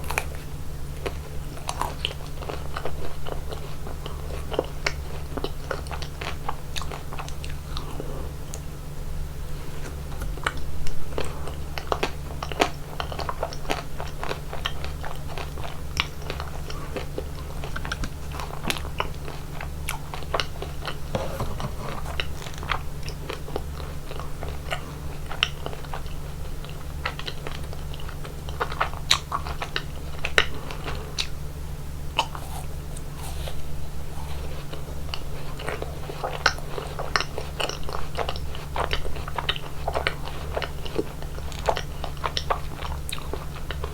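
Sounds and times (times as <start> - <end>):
steady low hum: 0.0 - 43.9
crunchy bites of ice cream: 32.1 - 43.9
wet chewing: 32.1 - 43.9.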